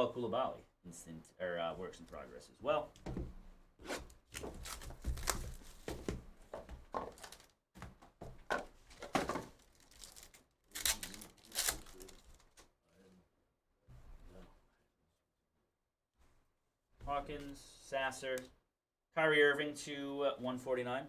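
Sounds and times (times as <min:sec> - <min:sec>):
cards rustling: 0:04.3 - 0:06.1, 0:07.0 - 0:07.5, 0:08.9 - 0:12.7
plastic wrappers ripping and crinkling: 0:04.4 - 0:05.9, 0:07.0 - 0:07.5, 0:09.1 - 0:12.6.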